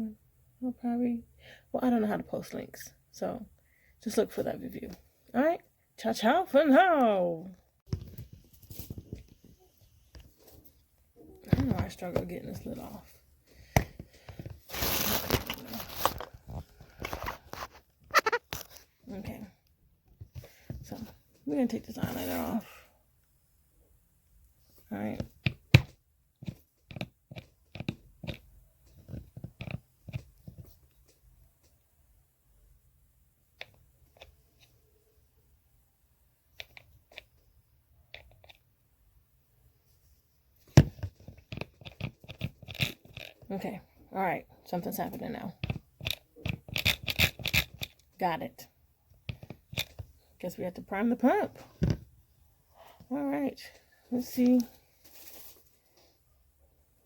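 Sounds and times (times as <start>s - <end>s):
plastic crinkling: 14.6s - 18.8s.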